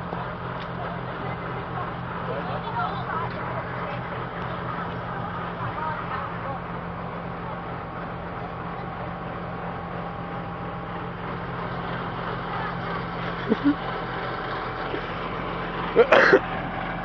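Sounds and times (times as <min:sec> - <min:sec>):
constant rushing noise: 0:00.0 - 0:10.8
engine running low hum: 0:00.0 - 0:17.0.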